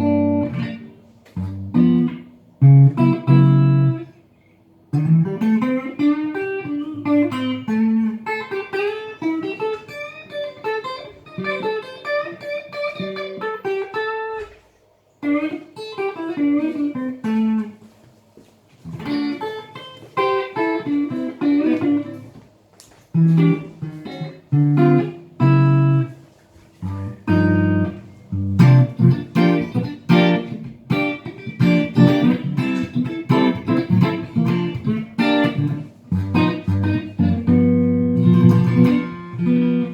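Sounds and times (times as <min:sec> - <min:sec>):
electric guitar playing: 0:00.0 - 0:39.9.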